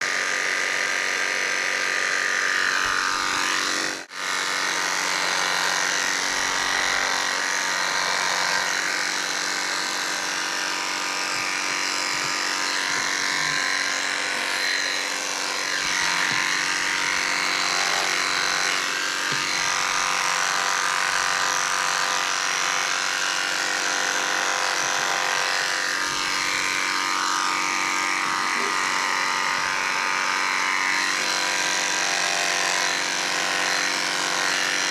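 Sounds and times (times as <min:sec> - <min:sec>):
electric hair clippers buzzing: 0:00.0 - 0:34.9.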